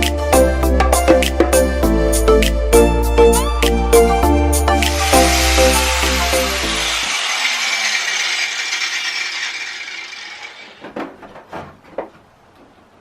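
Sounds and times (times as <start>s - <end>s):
angle grinder on steel: 4.8s - 10.8s.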